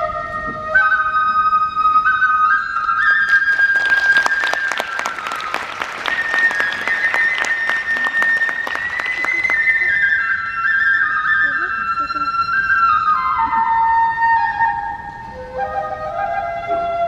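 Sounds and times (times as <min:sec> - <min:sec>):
transverse flute playing: 0:00.0 - 0:17.0
audience applause: 0:03.3 - 0:10.1.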